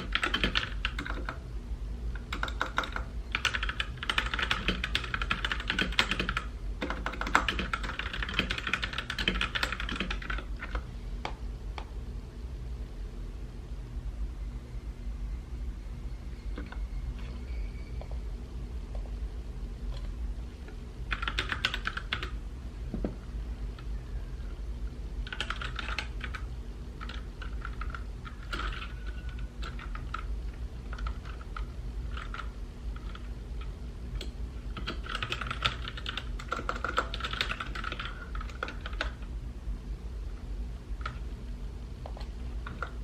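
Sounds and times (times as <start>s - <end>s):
typing on mechanical keyboard: 0.0s - 1.4s, 2.2s - 10.8s, 21.1s - 22.4s, 25.2s - 30.3s, 30.9s - 33.3s, 34.2s - 39.2s, 42.6s - 43.0s
steady low hum: 0.0s - 43.0s.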